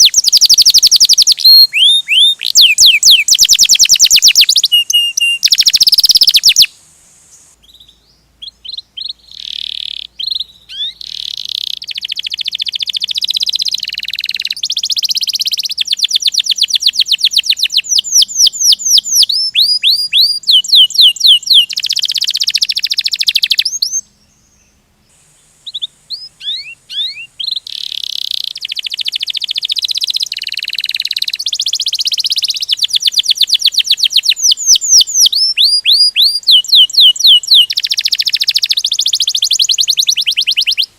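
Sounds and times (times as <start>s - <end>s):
canary singing trills: 0.0s - 40.9s.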